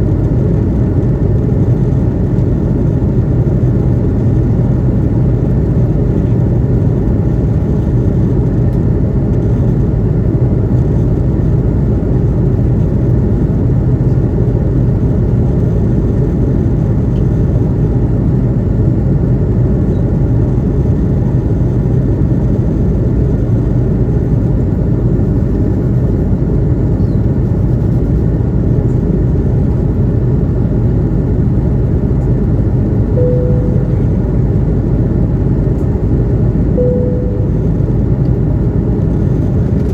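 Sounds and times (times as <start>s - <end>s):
airliner cabin engine rumble: 0.0s - 39.9s
brief single tone: 33.2s - 34.8s, 36.8s - 38.3s.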